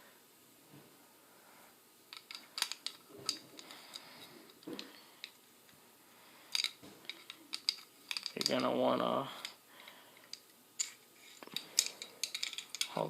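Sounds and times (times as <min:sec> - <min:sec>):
clicks of pistol parts: 0:02.1 - 0:04.0, 0:06.5 - 0:08.7, 0:10.2 - 0:13.0.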